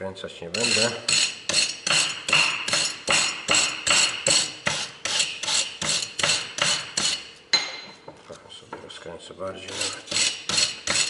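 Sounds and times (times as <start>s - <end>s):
hand tool striking metal: 0.5s - 8.0s, 9.7s - 11.0s.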